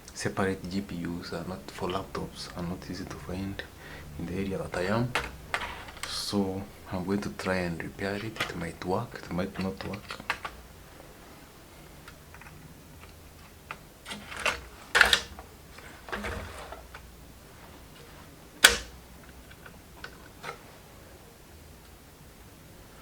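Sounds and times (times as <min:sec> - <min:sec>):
small tools clicking and tapping: 0:09.6 - 0:10.6.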